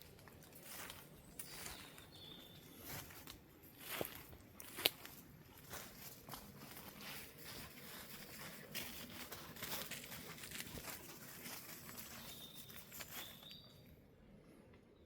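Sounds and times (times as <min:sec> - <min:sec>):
footsteps on dry leaves: 0:00.0 - 0:13.6
faint high bird chirp: 0:01.2 - 0:03.2, 0:12.0 - 0:14.0.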